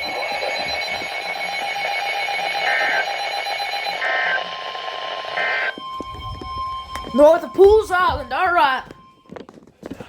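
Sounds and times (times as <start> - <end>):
warbling digital data tone: 0.0 - 3.5
steady electronic alert tone: 5.7 - 9.2.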